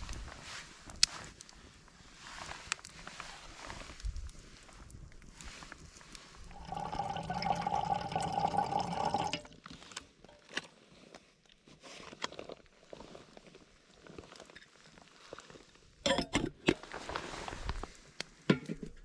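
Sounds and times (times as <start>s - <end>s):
liquid pouring into container: 6.5s - 9.6s.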